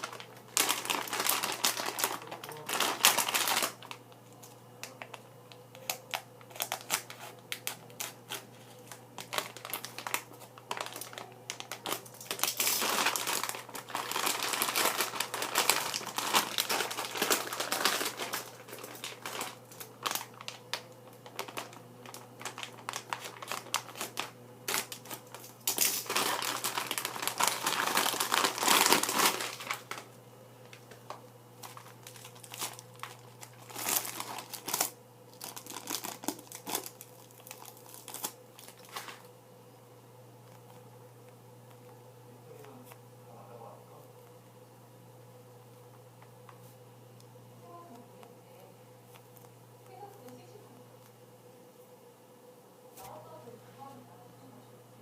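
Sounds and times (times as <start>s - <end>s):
plastic packaging crinkling: 0.0s - 39.3s
faint steady hum: 0.0s - 55.0s.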